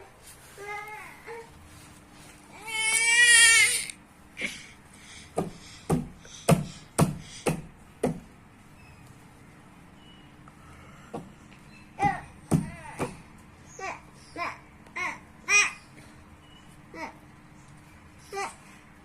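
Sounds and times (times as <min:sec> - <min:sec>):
baby crying: 0:02.5 - 0:04.0.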